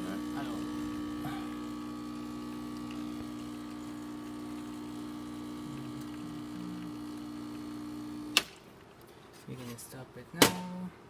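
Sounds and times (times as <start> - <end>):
espresso machine pump humming: 0.0 - 8.5.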